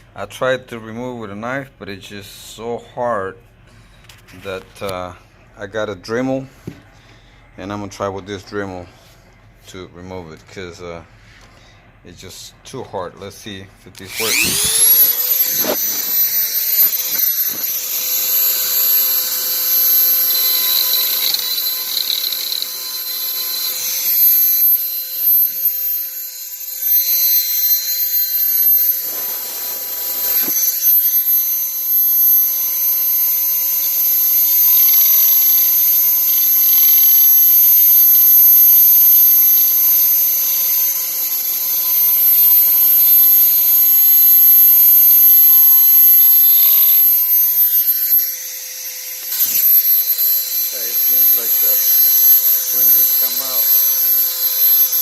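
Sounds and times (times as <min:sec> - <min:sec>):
rotary tool grinding rubber: 0:14.0 - 0:55.0.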